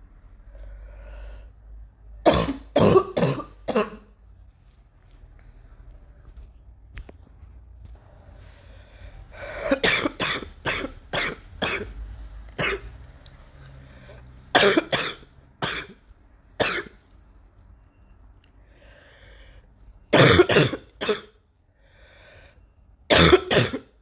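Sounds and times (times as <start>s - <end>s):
person coughing: 2.2s - 4.1s, 9.6s - 11.9s, 14.6s - 16.0s, 16.6s - 16.9s, 20.1s - 21.4s, 23.1s - 24.0s.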